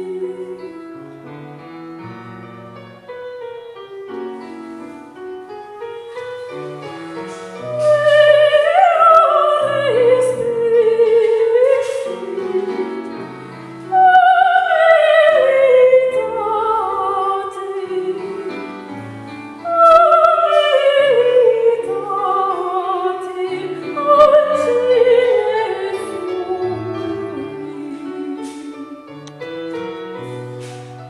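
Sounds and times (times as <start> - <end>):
piano accompaniment: 0.0 - 31.0
operatic singing with vibrato: 6.1 - 30.9.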